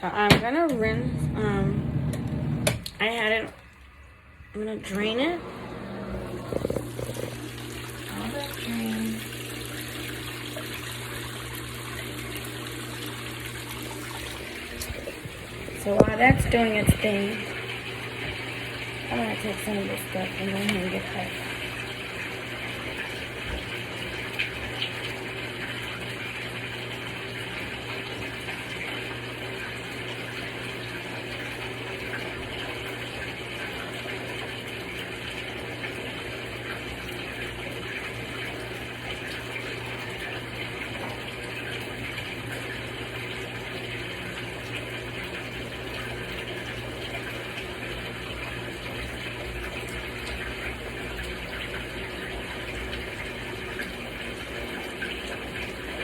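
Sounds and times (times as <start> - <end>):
low motor hum: 0.0 - 3.6, 4.4 - 21.6
water rushing: 0.0 - 22.9.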